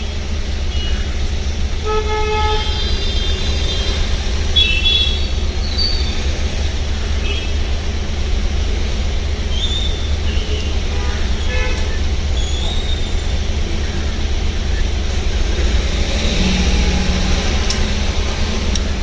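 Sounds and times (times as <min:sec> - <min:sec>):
traffic rumble: 0:00.0 - 0:19.0
vehicle horns tooting: 0:00.6 - 0:05.5, 0:07.2 - 0:07.8, 0:09.9 - 0:13.3.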